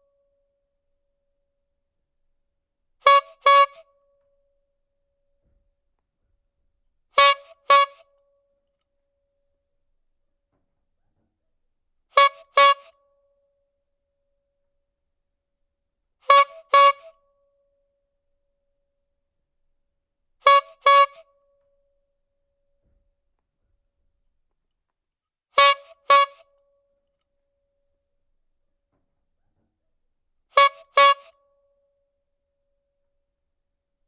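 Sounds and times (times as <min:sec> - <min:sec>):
clown bulb horn honking: 0:03.0 - 0:04.0, 0:07.2 - 0:08.2, 0:12.1 - 0:13.0, 0:16.2 - 0:17.2, 0:20.4 - 0:21.3, 0:25.6 - 0:26.5, 0:30.5 - 0:31.4.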